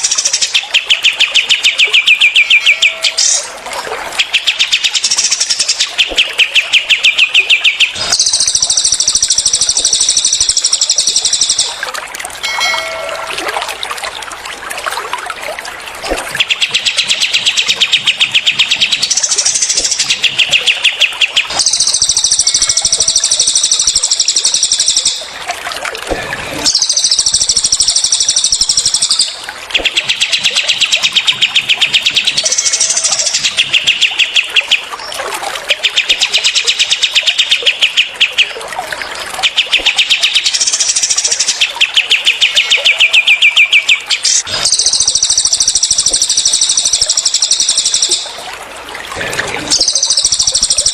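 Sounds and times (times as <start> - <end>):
trickling water: 0.0 - 50.9.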